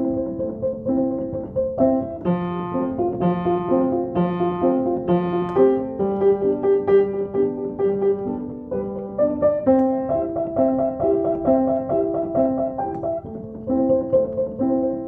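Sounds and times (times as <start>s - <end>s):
piano single notes: 0.0s - 15.0s.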